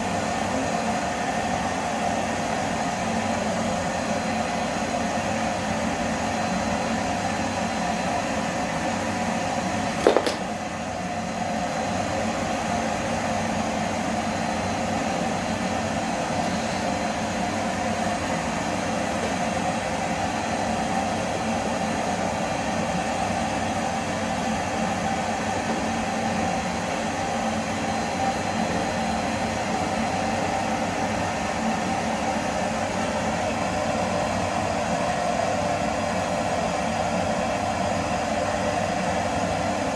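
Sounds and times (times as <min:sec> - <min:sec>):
sharp knock: 0:10.0 - 0:10.5
vacuum cleaner running: 0:11.6 - 0:39.9.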